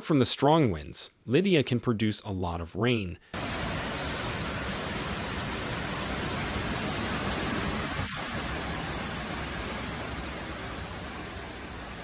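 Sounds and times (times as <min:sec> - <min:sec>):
wind: 0:03.3 - 0:12.0
heavy rain: 0:03.4 - 0:12.0.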